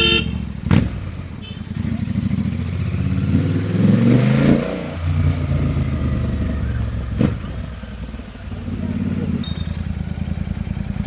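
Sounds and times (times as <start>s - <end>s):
sharp exhaust pop: 0.0s - 1.1s
motorcycle engine revving: 0.0s - 11.0s.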